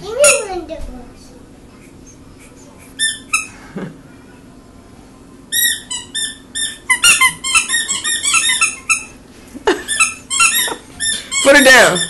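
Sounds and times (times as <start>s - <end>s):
squeaky toy squeaking: 0.2s - 0.5s, 3.0s - 3.5s, 5.5s - 9.2s, 9.9s - 12.0s.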